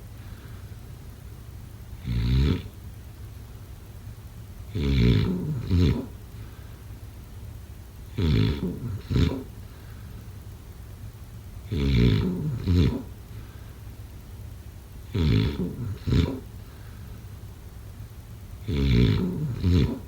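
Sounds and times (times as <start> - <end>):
person snoring: 2.0 - 2.7, 4.7 - 6.1, 8.2 - 9.5, 11.7 - 13.1, 15.1 - 16.4, 18.7 - 20.0.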